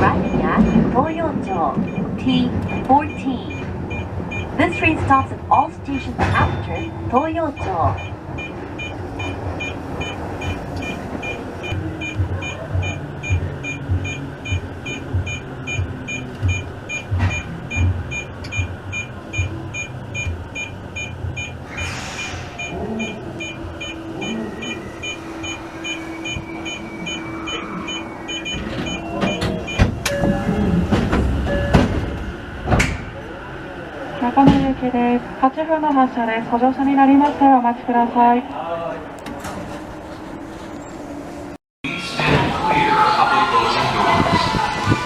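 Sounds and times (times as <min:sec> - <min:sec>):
train stopping clunks: 0:00.0 - 0:37.7
train running rumble: 0:00.0 - 0:45.0
air hiss: 0:21.7 - 0:22.6.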